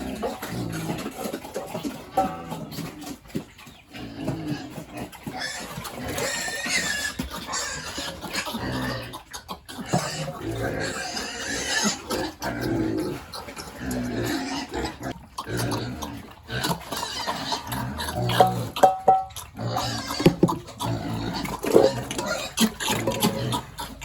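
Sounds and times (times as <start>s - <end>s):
pigs grunting: 0.0s - 24.0s
sharp knocks: 20.2s - 20.6s.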